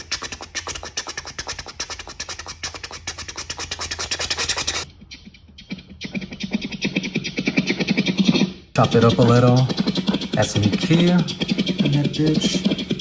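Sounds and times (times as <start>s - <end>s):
bassy rhythmic chugging: 5.0s - 13.0s
fast scratchy train chugging: 6.7s - 13.0s.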